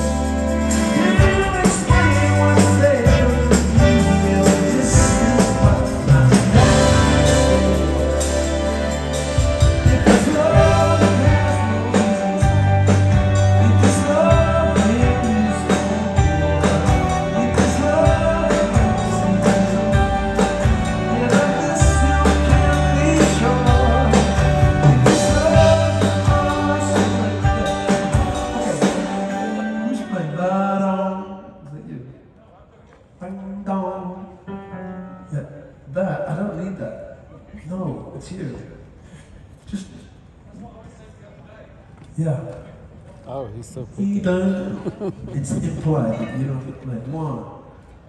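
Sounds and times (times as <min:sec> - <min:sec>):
strong bass line: 0:00.0 - 0:29.2
steady drum beat: 0:00.0 - 0:29.4
live amplified band music: 0:00.0 - 0:31.6.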